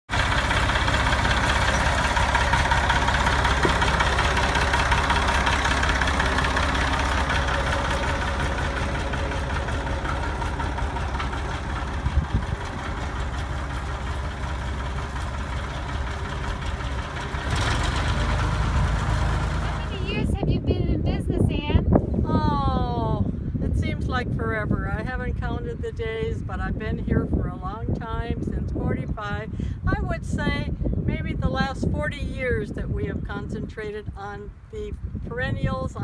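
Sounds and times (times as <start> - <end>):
engine rumbling: 0.0 - 36.0
short knocks: 3.5 - 5.0.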